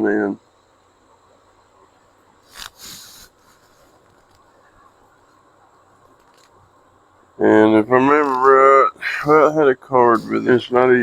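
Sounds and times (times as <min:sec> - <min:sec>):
papery rustle: 0:02.4 - 0:04.6.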